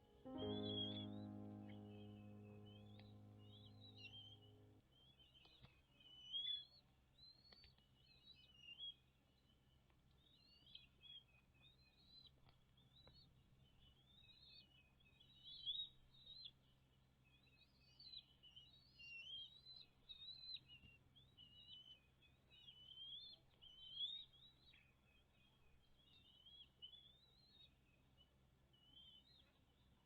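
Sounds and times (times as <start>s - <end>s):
birds chirping and twittering: 0.0s - 4.7s.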